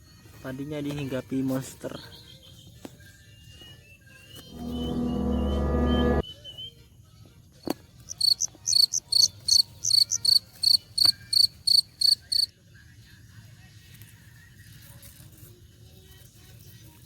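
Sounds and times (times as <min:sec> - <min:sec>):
cricket chirping: 0:08.1 - 0:12.5.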